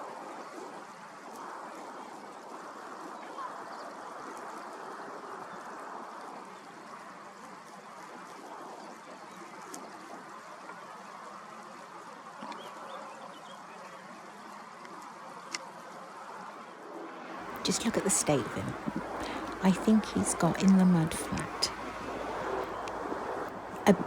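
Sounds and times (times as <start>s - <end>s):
background hiss: 17.2s - 24.0s
distant bird calls: 17.4s - 24.0s.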